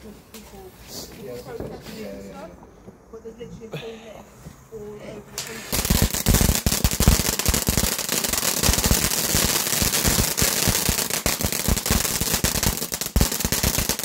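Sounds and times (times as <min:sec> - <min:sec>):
firework cracks and bangs: 0:01.4 - 0:03.0, 0:05.4 - 0:14.0.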